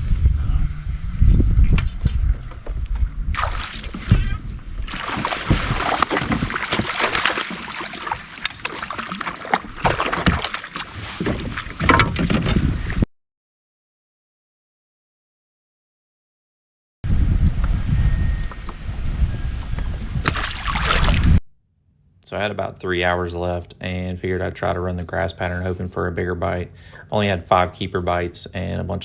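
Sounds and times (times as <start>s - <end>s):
low rumble: 0.0s - 6.5s, 17.1s - 20.3s
wind and water noise: 0.0s - 13.1s, 17.1s - 21.4s
small knocks and splashes: 3.3s - 12.7s, 20.2s - 21.3s.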